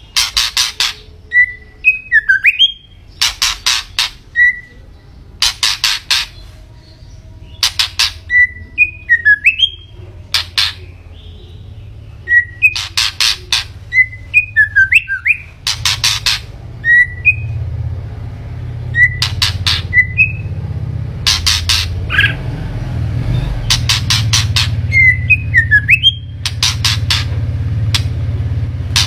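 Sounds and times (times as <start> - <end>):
bird harsh clicking notes: 0.0 - 1.2, 2.2 - 4.6, 5.4 - 6.5, 7.6 - 11.0, 12.3 - 17.4, 19.0 - 20.5, 21.2 - 22.4, 23.5 - 28.3
bird whistling song: 0.0 - 17.6, 18.8 - 20.6, 21.3 - 22.4, 23.3 - 27.3
steady low hum: 0.0 - 29.0.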